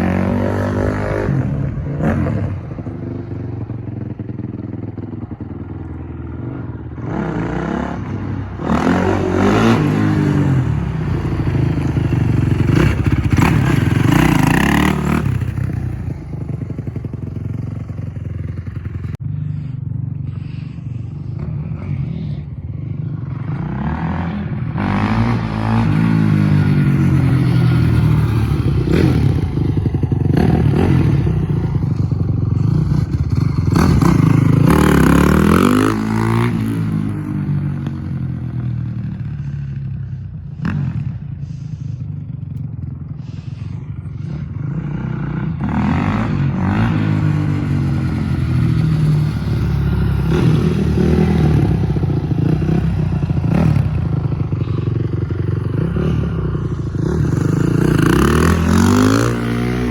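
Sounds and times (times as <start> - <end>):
dirt bike engine revving: 0.0 - 3.0, 6.3 - 22.4, 23.2 - 38.1, 43.2 - 59.9.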